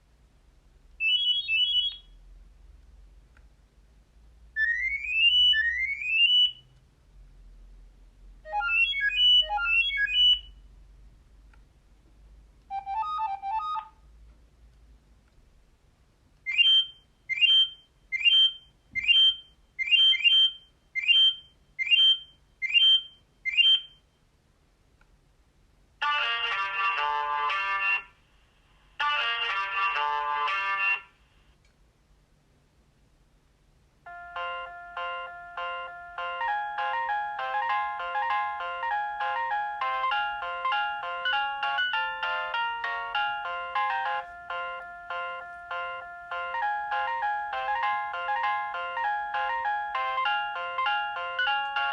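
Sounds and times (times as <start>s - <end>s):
rising electronic ringtone chirp: 1.0s - 2.1s, 4.6s - 6.7s, 8.5s - 10.6s, 12.7s - 14.0s, 16.5s - 24.0s, 34.1s - 51.9s.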